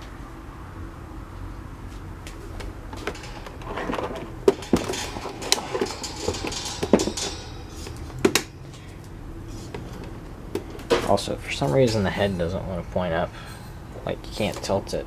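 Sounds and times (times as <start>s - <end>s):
plastic fan knocks and rattles: 2.6s - 8.6s.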